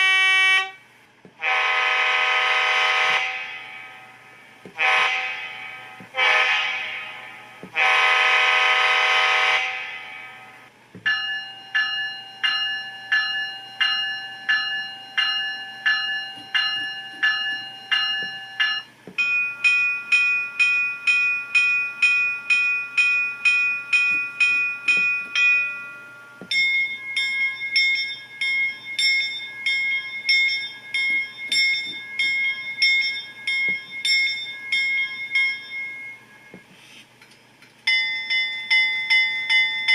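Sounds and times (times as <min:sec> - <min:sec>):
locomotive horn blasts: 0:00.0 - 0:00.8, 0:01.4 - 0:04.2, 0:04.8 - 0:10.7
locomotive bell ringing: 0:09.8 - 0:36.7, 0:37.9 - 0:39.9.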